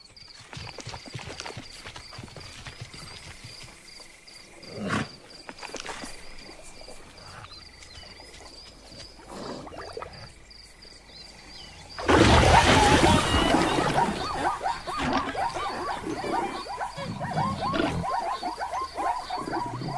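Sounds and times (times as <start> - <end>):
loud animal outburst: 12.0 - 19.9
rapid chattering animal calls: 12.2 - 19.9.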